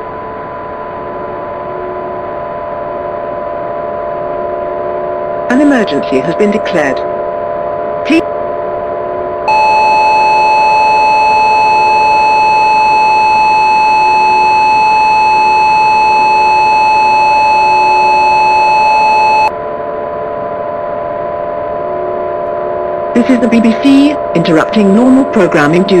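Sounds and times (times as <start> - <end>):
drone of low tones: 0.0 - 26.0
loud steady electronic alert tone: 5.5 - 7.1, 9.4 - 19.5, 22.8 - 26.0.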